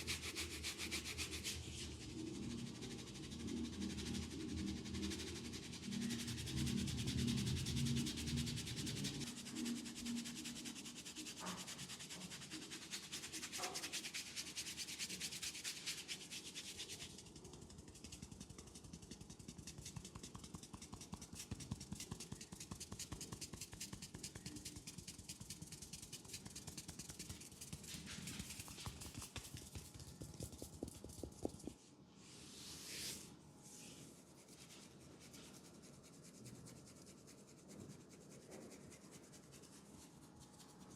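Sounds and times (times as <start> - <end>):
hands rubbing skin and hair: 10.2 - 40.9.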